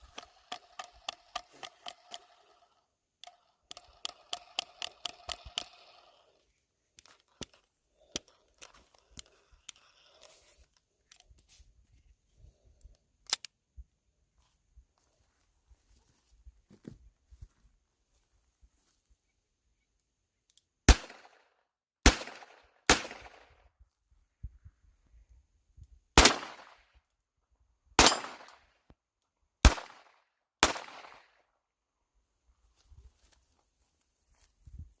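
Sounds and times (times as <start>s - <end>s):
revolver gunshots echoing: 22.0s - 23.4s, 26.2s - 26.8s, 28.0s - 28.5s, 29.7s - 31.2s.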